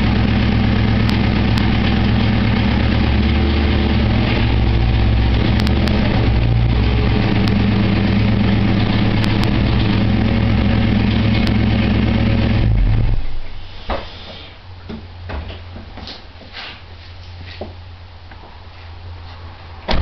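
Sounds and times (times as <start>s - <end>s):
car engine idling: 0.0s - 13.6s.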